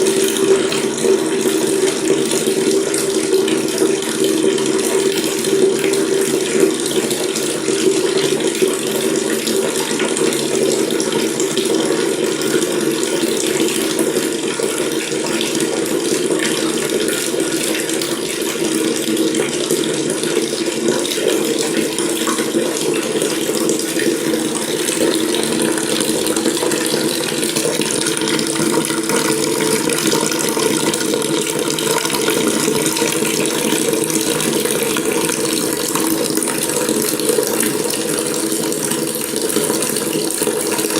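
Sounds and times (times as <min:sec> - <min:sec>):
water running from a tap: 0:00.0 - 0:40.9.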